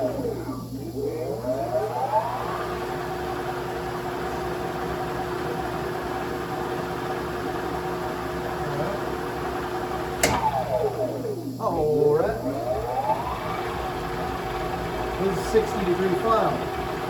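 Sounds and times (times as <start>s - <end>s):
lathe motor humming: 0.0s - 17.0s
switch click: 10.2s - 10.9s.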